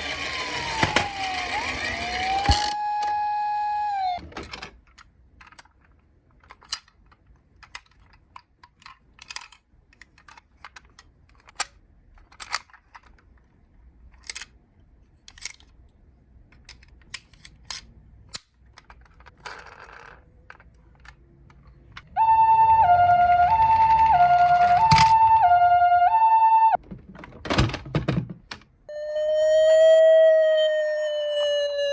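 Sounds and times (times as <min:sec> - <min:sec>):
two-tone ambulance siren: 0:00.4 - 0:04.2, 0:22.2 - 0:26.8, 0:28.9 - 0:31.9.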